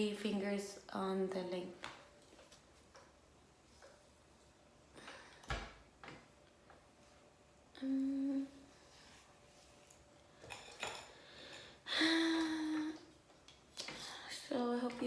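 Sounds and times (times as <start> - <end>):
woman humming: 7.7 - 8.7, 11.9 - 13.2.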